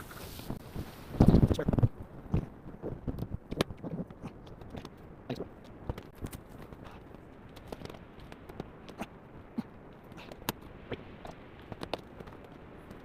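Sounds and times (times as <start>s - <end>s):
outdoor background noise: 0.0s - 13.0s
light clicks taps and scrapes: 1.3s - 9.0s.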